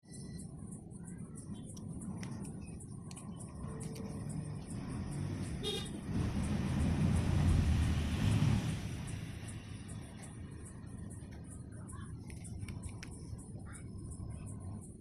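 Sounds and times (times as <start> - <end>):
vehicle rumbling past: 3.6 - 11.1
car horn toot: 5.6 - 6.0.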